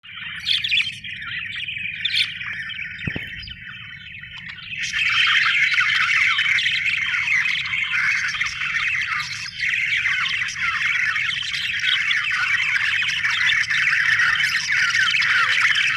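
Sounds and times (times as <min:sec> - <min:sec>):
budgerigars chattering: 0:00.1 - 0:15.9.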